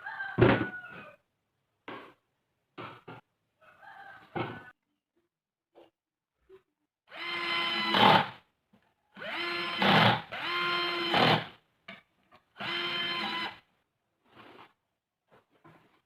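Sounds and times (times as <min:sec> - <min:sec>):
small power tool motor whine: 0:07.1 - 0:08.1, 0:09.2 - 0:11.4, 0:12.6 - 0:13.6.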